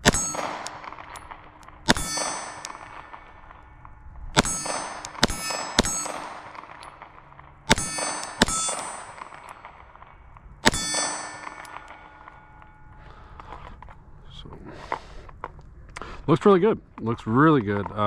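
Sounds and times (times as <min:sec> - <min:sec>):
pistol shots: 0:00.0 - 0:12.7
steel target ringing: 0:00.0 - 0:13.4.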